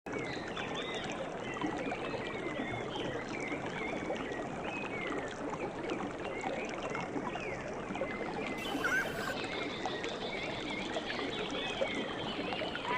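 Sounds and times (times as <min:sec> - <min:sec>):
small birds chirping: 0:08.6 - 0:09.4, 0:12.3 - 0:12.9
running water rushing: 0:08.6 - 0:09.5, 0:11.3 - 0:12.9.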